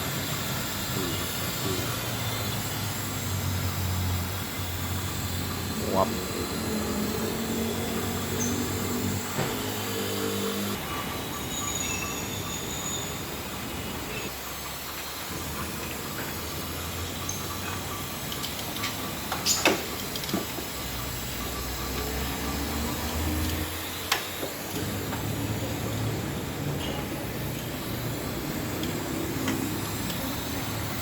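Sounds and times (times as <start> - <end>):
mechanical hum and hiss: 0.0 - 31.0.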